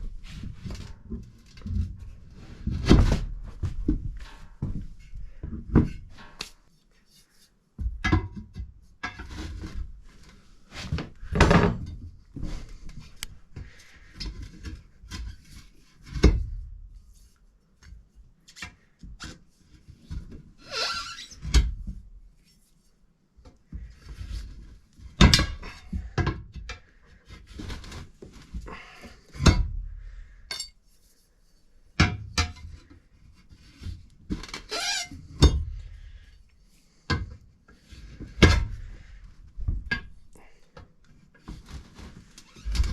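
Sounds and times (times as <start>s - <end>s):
metal tools thunking and clanking: 30.5s - 30.8s.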